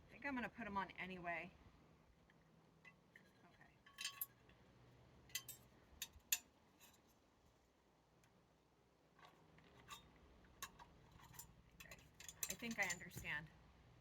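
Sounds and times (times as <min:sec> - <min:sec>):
metallic clicks and clinks: 0:03.9 - 0:04.5, 0:05.3 - 0:06.5, 0:09.8 - 0:13.4.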